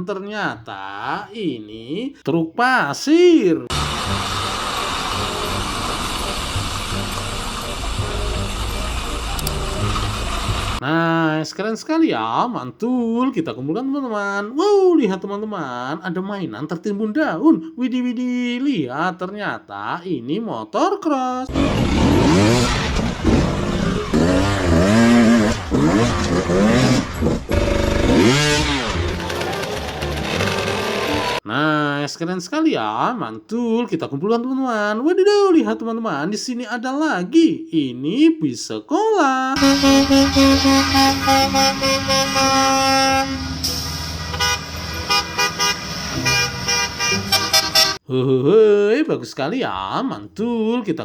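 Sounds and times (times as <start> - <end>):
bus horn tooting: 3.7 - 10.8, 21.6 - 31.4, 39.6 - 48.0
dirt bike engine revving: 3.7 - 10.8, 21.5 - 31.4, 39.6 - 48.0.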